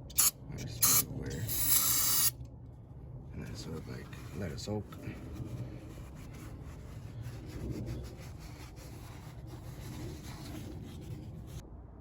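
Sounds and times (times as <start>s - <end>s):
low rumble: 2.3s - 12.0s
hand rubbing and scraping: 3.4s - 11.6s.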